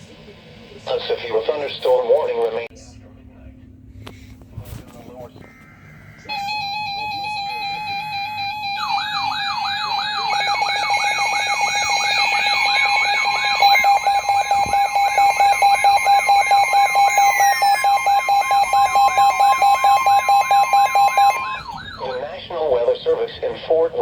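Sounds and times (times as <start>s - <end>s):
steady electronic alert tone: 6.0s - 22.2s
falling electronic sweep: 9.5s - 22.2s.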